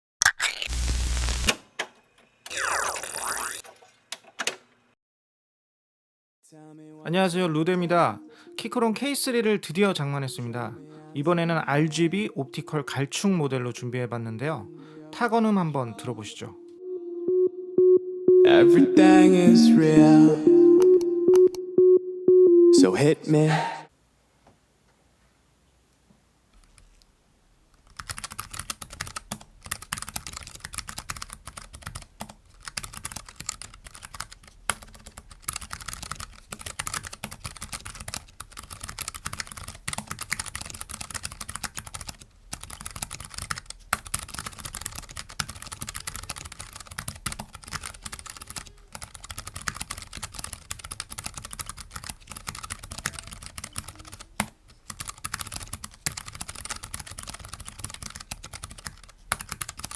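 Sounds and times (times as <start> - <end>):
fast mechanical keyboard typing: 27.8 - 59.9.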